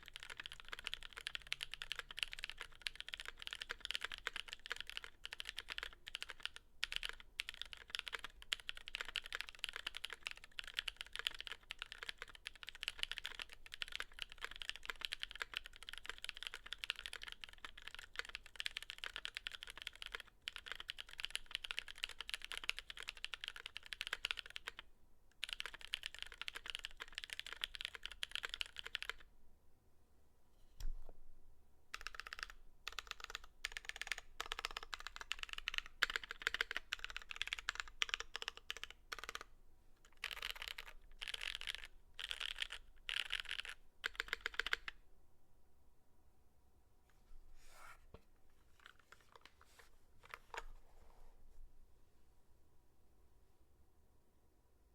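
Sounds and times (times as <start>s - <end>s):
fast typing on mechanical keyboard: 0.0s - 29.3s, 32.0s - 39.5s, 40.1s - 44.9s.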